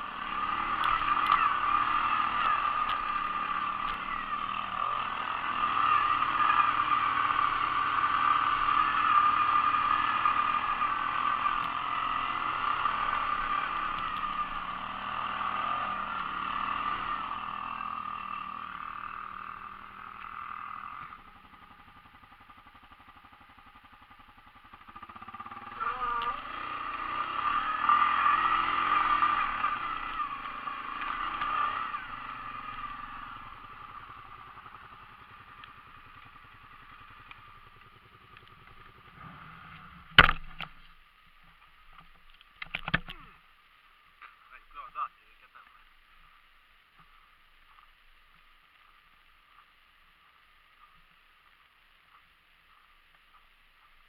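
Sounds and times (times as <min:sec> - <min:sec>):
atv engines revving: 0:00.0 - 0:40.9, 0:41.5 - 0:43.4.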